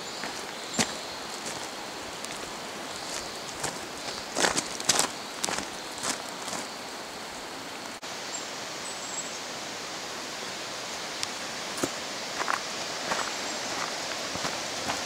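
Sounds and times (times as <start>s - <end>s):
stream rushing over rocks: 0.0s - 15.0s
footsteps: 0.2s - 6.8s, 11.8s - 15.0s.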